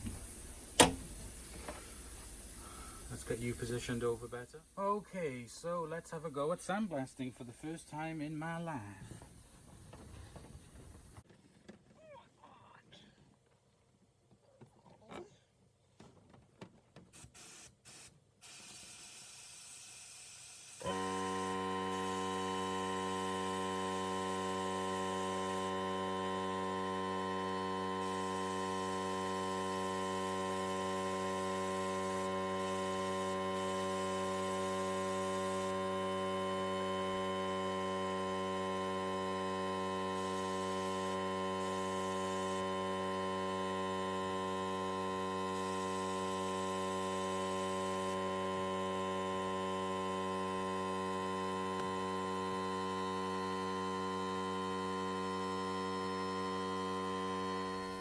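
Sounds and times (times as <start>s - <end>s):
compressed air hiss: 0.0s - 11.2s, 17.2s - 26.5s, 27.5s - 38.4s, 39.5s - 42.7s
steady electrical hum: 0.0s - 11.2s, 20.9s - 58.0s.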